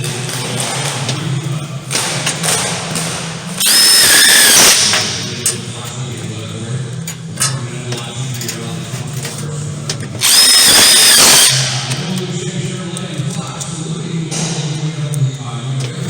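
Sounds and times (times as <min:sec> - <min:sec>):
power drill whine: 0:03.6 - 0:05.6, 0:10.2 - 0:12.3.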